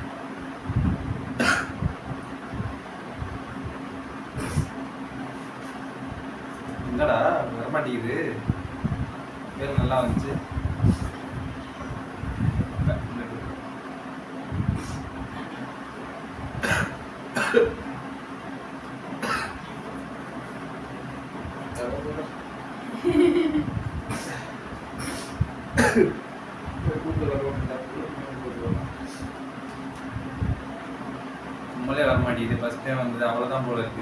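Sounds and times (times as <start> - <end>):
cooling fan hum: 0.0 - 34.0
person coughing: 1.4 - 1.8, 16.6 - 17.8, 19.2 - 19.7, 24.1 - 26.2.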